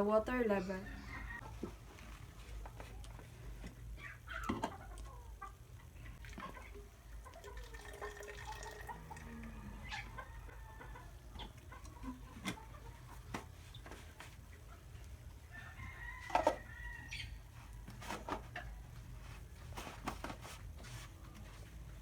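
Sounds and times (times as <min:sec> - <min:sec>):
rooster crowing: 0:08.8 - 0:11.2, 0:15.5 - 0:17.3.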